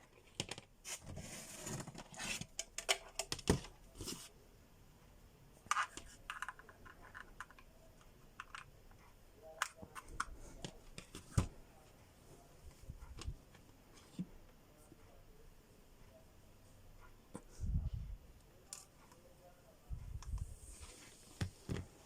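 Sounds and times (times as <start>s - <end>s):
objects clicking and tapping: 1.8s - 3.8s, 5.6s - 8.8s.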